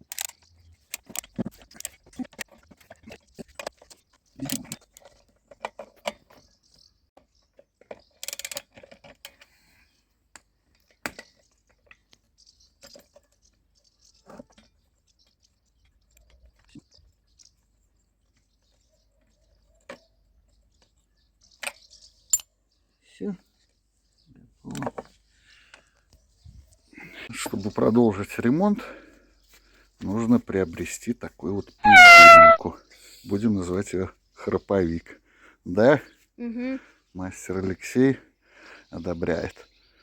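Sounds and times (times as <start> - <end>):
metal tools clicking and clinking: 0.0 - 6.3
short scrapes: 31.9 - 32.6.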